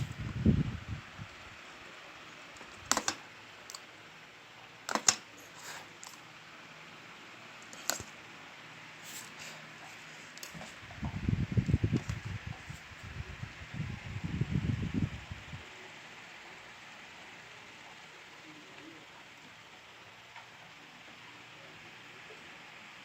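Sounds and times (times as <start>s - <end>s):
clicks and knocks handling wires: 2.6s - 3.8s, 4.9s - 5.3s, 7.6s - 8.1s.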